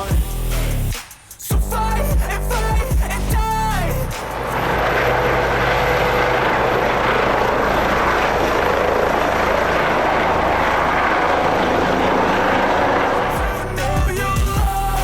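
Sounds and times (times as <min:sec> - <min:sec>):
helicopter rotor and engine: 0:04.2 - 0:14.6.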